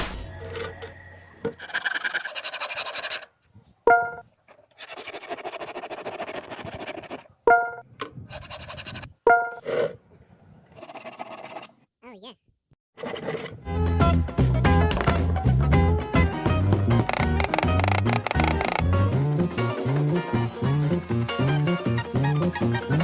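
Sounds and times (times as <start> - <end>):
rasping scratching noise: 1.6 - 3.3, 4.7 - 7.4, 17.0 - 18.8.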